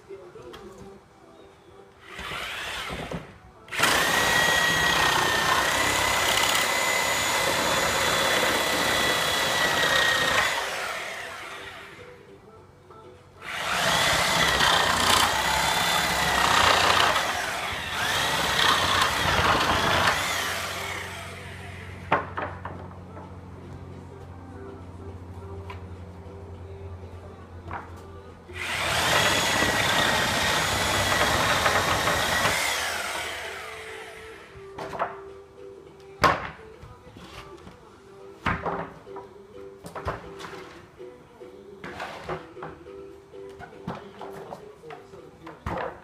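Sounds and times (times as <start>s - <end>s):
reciprocating saw cutting nails: 13.4s - 21.7s, 28.6s - 34.3s.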